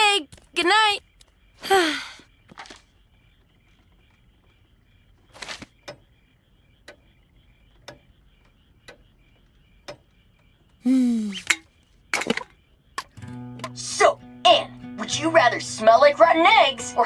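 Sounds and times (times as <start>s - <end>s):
faint steady chirping: 0.0s - 17.0s
person sighing: 1.6s - 2.2s, 10.8s - 11.5s
clock ticking: 3.2s - 17.0s.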